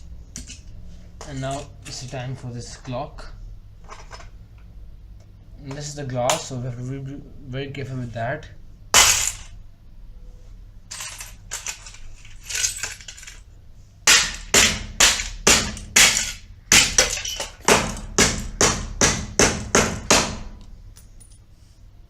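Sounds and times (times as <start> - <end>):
hammer smashing clock: 9.0 - 9.5, 14.1 - 20.5.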